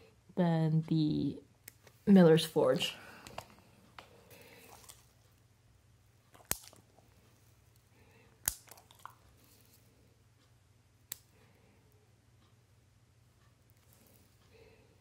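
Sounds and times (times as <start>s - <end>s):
nail clipper clipping toenail: 6.4s - 6.8s, 8.4s - 9.1s.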